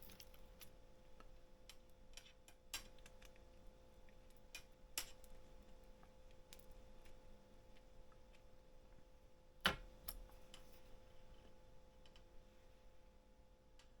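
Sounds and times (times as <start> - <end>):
small parts clicking and tapping: 0.0 - 8.5
faint electrical hum: 0.0 - 14.0.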